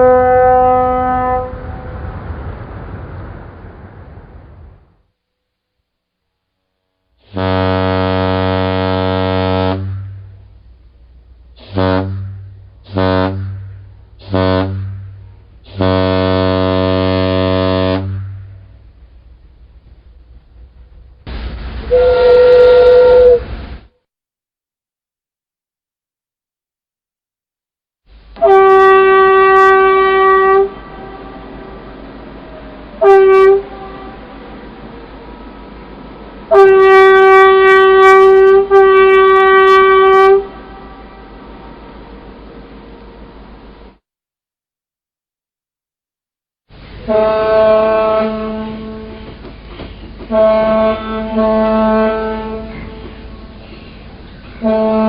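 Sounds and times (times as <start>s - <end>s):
boat air horn honking: 0.0s - 1.9s, 7.2s - 10.4s, 11.6s - 18.7s, 21.9s - 23.5s, 28.4s - 31.8s, 32.9s - 34.6s, 36.5s - 41.9s, 47.0s - 49.4s, 50.3s - 53.7s, 54.6s - 55.0s.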